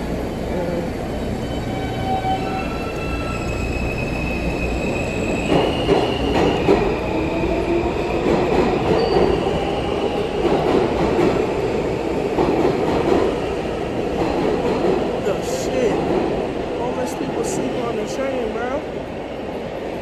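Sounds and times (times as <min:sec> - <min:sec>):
subway train rumbling: 0:00.0 - 0:20.0
train wheels squealing: 0:01.1 - 0:10.4.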